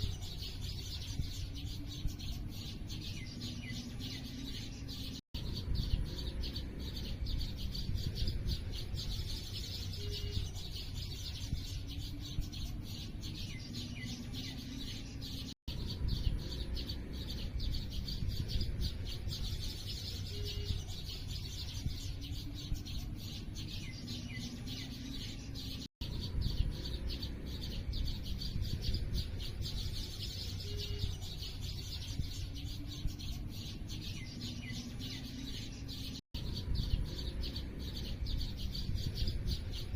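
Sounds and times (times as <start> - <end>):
lower bird calls: 0.0 - 39.9
small birds chirping: 0.0 - 39.9.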